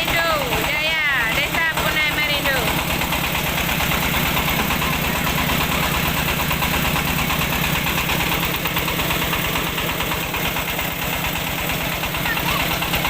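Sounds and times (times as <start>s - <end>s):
milling machine engine running: 0.0s - 13.0s.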